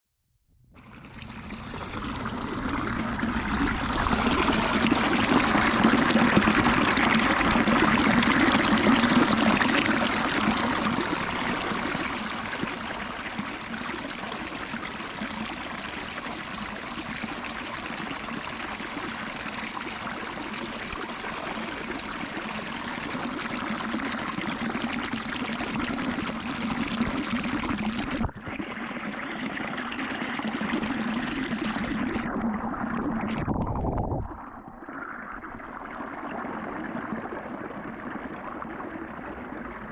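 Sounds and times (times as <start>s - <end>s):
underwater rushing bubbling water: 0.8s - 39.9s.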